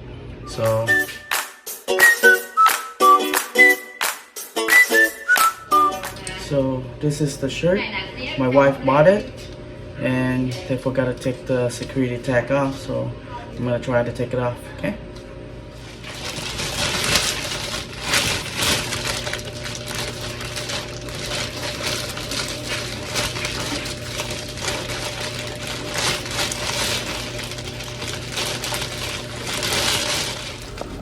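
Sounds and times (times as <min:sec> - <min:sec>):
steady low hum: 0:06.2 - 0:31.0
shirt and plastic tag rustling: 0:15.7 - 0:31.0.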